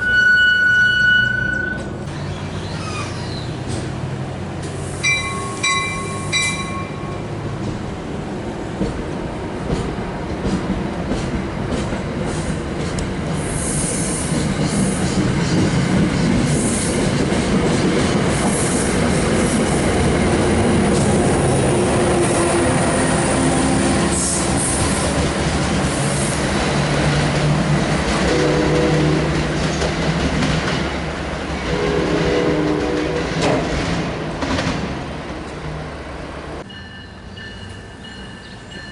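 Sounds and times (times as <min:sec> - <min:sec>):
wheels squealing: 0:00.0 - 0:03.8
train wheels rumbling on rails: 0:01.2 - 0:38.9
train horn blasts: 0:28.3 - 0:29.4, 0:31.6 - 0:33.4.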